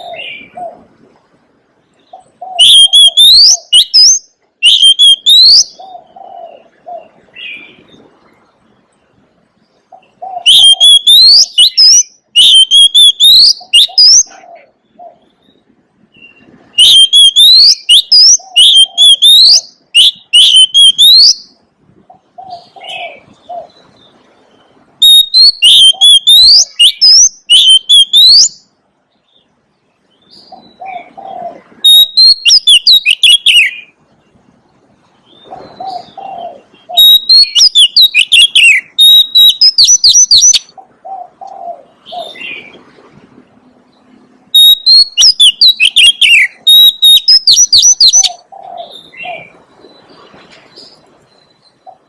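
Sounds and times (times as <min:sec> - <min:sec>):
bird singing whistles and trills: 0:02.0 - 0:08.0, 0:09.9 - 0:21.6, 0:22.4 - 0:28.7, 0:30.1 - 0:34.0, 0:35.2 - 0:40.7, 0:43.9 - 0:52.0.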